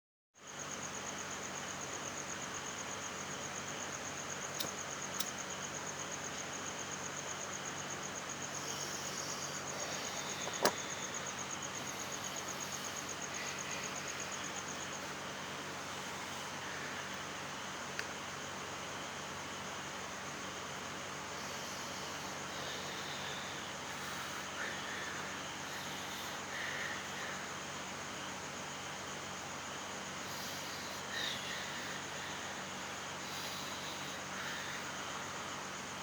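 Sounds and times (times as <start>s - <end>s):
constant hiss: 0.4s - 36.0s
cricket chirping trill: 0.4s - 36.0s
sharp clicks: 4.6s - 5.4s.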